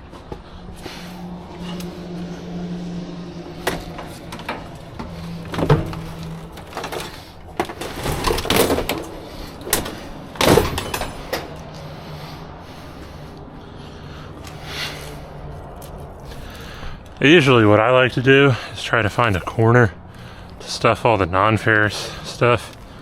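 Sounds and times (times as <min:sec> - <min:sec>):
scrap metal clanking and rattling: 0:00.0 - 0:13.3
steady low hum: 0:00.0 - 0:23.0.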